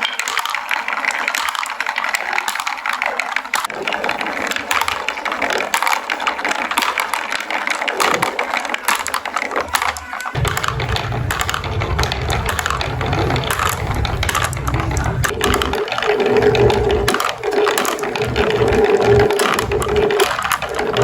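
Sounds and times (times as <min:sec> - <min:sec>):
marbles clacking on wooden run: 0:00.0 - 0:21.0
low rumble: 0:10.4 - 0:21.0
steady hum: 0:10.4 - 0:21.0.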